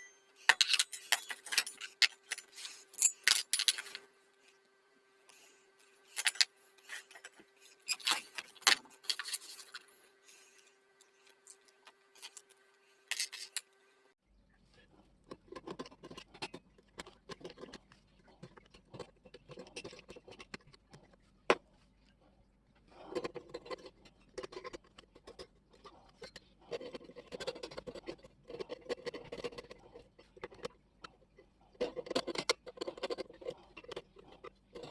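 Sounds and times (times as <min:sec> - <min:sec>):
metal parts and tools clinking: 0:00.0 - 0:04.1, 0:05.8 - 0:10.5, 0:11.2 - 0:13.7.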